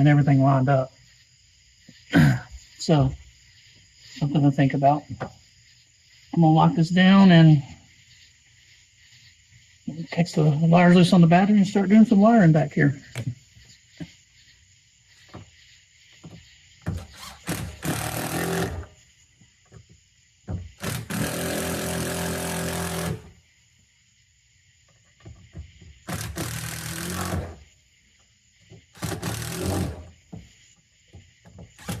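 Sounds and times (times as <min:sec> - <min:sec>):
power drill driving screws: 0:16.9 - 0:18.9, 0:20.8 - 0:23.3, 0:26.1 - 0:27.6, 0:29.0 - 0:30.1, 0:31.8 - 0:32.0.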